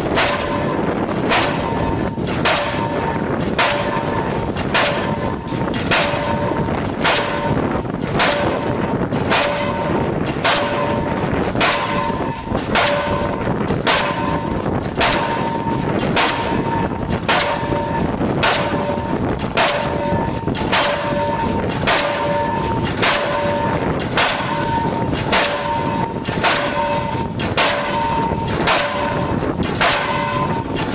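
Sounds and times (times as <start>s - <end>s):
diesel pile hammer striking: 0.0s - 30.9s
metallic ring: 0.0s - 30.9s.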